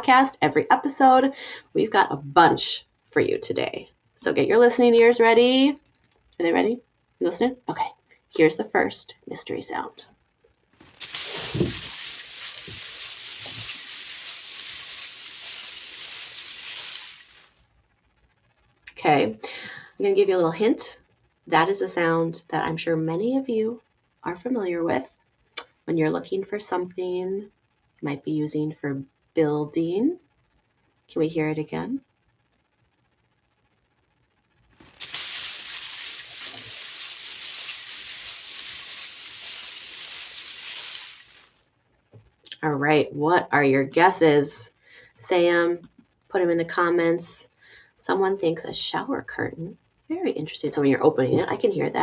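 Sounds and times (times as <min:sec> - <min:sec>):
plastic bricks clattering: 0:10.8 - 0:17.5, 0:34.8 - 0:41.5.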